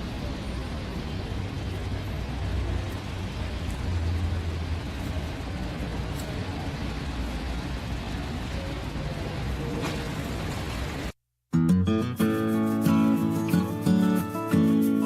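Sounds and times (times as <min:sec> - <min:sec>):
traffic hiss on wet road: 0:00.0 - 0:11.2
vehicle engine rumble: 0:00.0 - 0:11.2.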